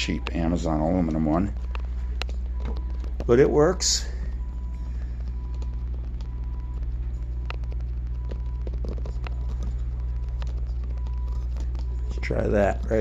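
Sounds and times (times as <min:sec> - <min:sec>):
steady low rumble: 0:00.0 - 0:13.0
equipment clicks and taps: 0:01.1 - 0:03.3.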